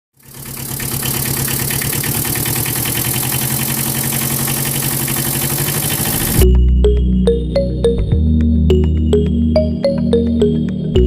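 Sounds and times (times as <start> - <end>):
engine idling: 0.1 - 6.4.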